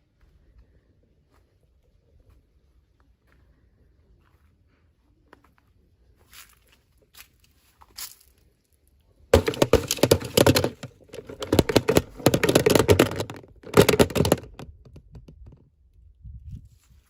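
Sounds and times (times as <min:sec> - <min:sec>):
plastic packaging crinkling: 0:09.4 - 0:14.6.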